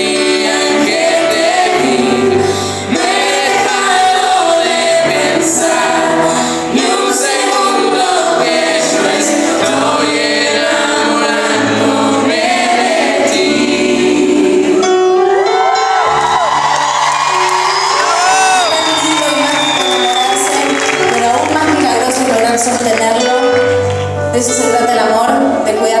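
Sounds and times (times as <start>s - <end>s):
women singing together: 0.0s - 14.9s.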